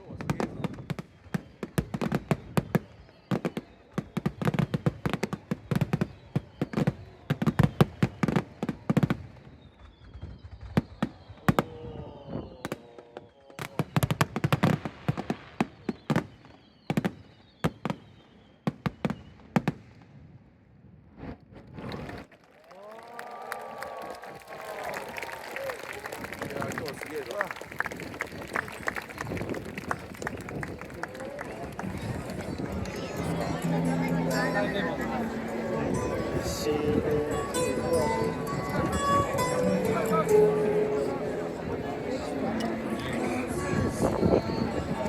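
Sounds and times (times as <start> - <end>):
crowd voices: 0.0 - 16.0, 21.8 - 45.0
fireworks booming and cracking: 0.0 - 20.3.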